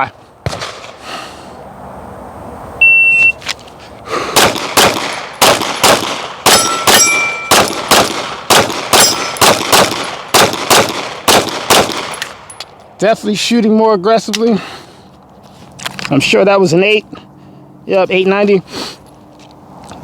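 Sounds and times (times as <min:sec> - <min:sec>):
shot timer beep: 0:02.8 - 0:03.4
pistol fired rapidly: 0:04.4 - 0:12.2
steel targets ringing: 0:06.5 - 0:07.6, 0:09.0 - 0:09.4.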